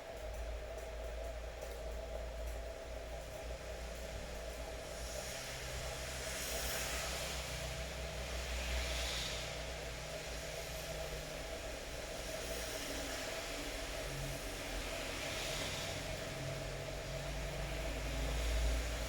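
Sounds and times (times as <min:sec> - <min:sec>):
steady rain falling: 0:03.3 - 0:19.0.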